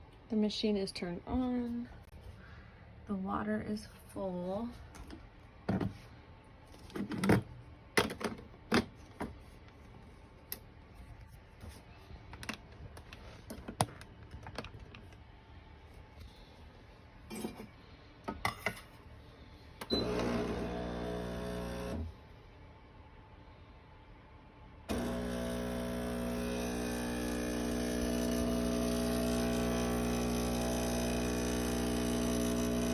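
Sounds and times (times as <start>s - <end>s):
espresso machine buzz: 19.8s - 22.2s, 24.9s - 32.9s.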